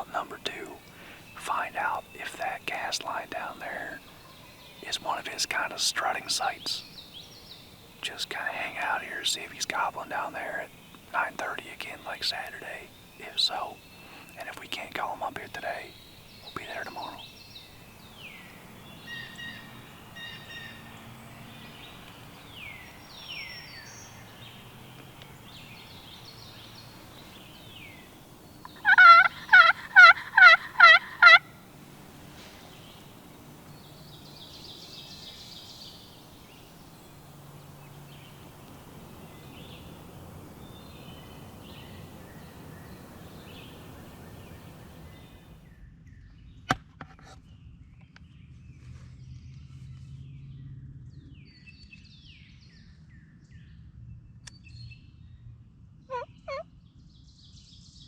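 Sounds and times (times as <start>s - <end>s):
songbird notes: 0.0s - 45.8s
turkey yelps: 28.6s - 31.5s.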